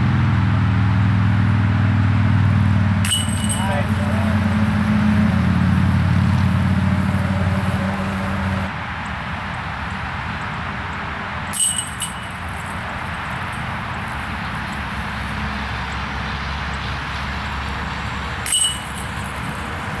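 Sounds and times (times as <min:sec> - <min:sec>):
disc hitting basket chains: 0:03.0 - 0:08.7, 0:11.6 - 0:14.0, 0:18.4 - 0:20.0
outdoor background hiss: 0:03.0 - 0:20.0.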